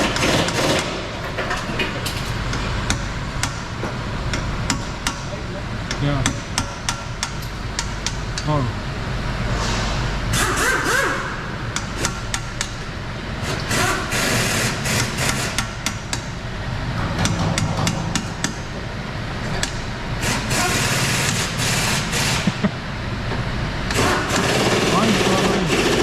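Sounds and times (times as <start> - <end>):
steady low hum: 0.8 - 10.3
hand tools knocking on metal: 1.4 - 2.9.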